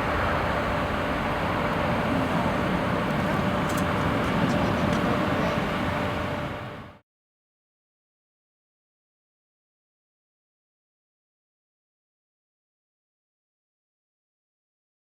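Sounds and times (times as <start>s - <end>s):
jet engines roaring at takeoff: 0.0s - 7.0s.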